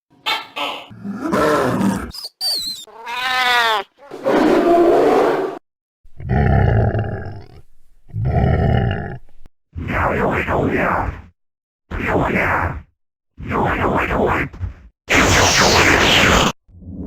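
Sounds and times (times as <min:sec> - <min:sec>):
synthesized growls: 0:04.1 - 0:09.4.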